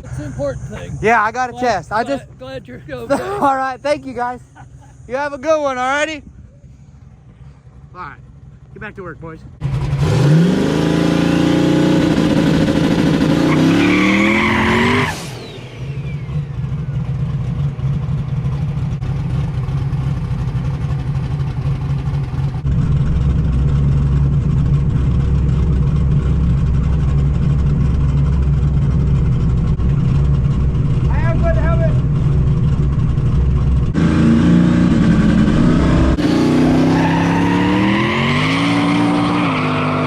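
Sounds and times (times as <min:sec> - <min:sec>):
low engine drone: 0:00.0 - 0:10.4, 0:15.2 - 0:40.0
race car engine accelerating: 0:09.6 - 0:16.9, 0:22.6 - 0:40.0.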